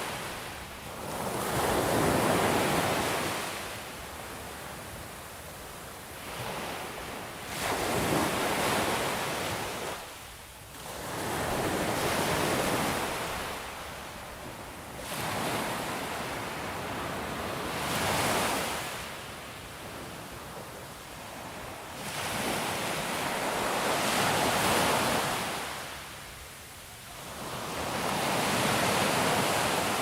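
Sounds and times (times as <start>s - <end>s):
waves breaking on shore: 15.0s - 26.4s, 27.0s - 30.0s.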